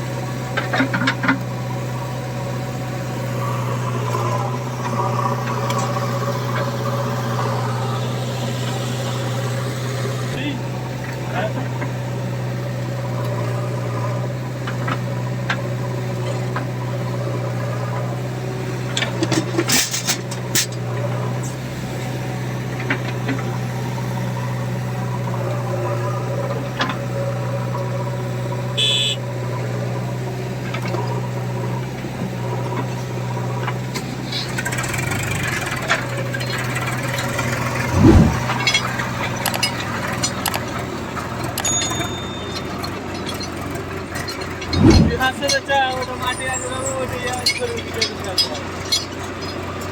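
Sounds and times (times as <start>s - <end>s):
diesel engine running: 0.0s - 49.9s
clanks and knocks: 0.6s - 1.5s, 18.8s - 21.6s, 31.9s - 49.9s
heavy thump: 37.9s - 38.6s, 44.7s - 45.4s.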